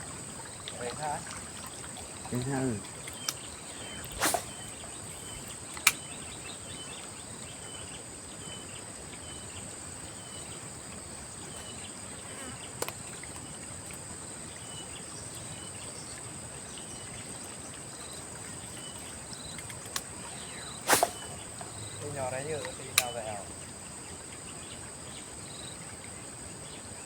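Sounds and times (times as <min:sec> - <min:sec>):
insect buzz: 0:00.0 - 0:27.0
insect chirping: 0:00.0 - 0:27.0
sharp clicks: 0:03.1 - 0:06.2, 0:20.8 - 0:21.4, 0:22.6 - 0:23.4.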